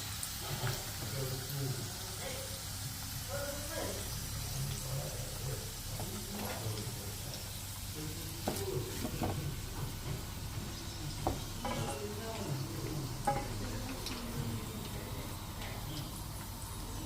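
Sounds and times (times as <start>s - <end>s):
food sizzling in hot oil: 0.0s - 17.0s
utensil knocking in pan: 8.4s - 10.3s, 11.2s - 14.3s.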